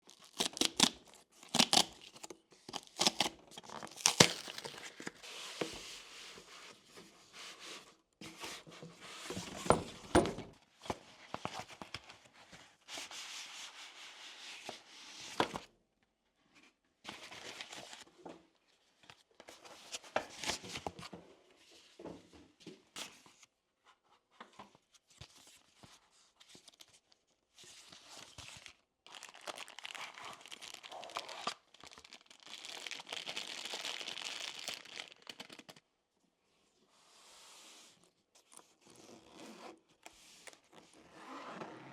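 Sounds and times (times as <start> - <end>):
wrapping rustling and tearing: 0.1 - 5.5, 28.2 - 35.8.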